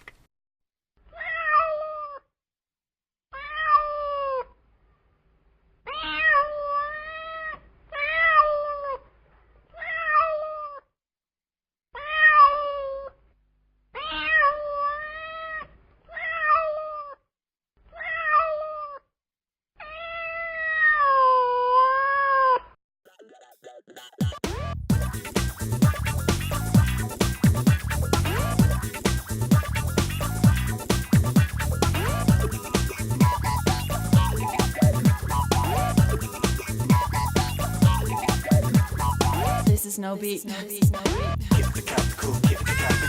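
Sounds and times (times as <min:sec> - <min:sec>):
cat meowing: 0:01.1 - 0:02.3, 0:03.3 - 0:04.5, 0:05.9 - 0:09.0, 0:09.8 - 0:10.9, 0:12.0 - 0:13.2, 0:14.0 - 0:17.2, 0:17.9 - 0:19.1, 0:19.8 - 0:22.7.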